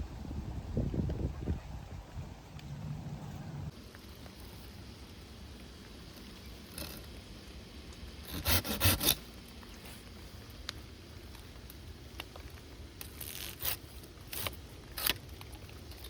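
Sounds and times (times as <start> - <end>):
scraping strokes: 8.2 - 9.2.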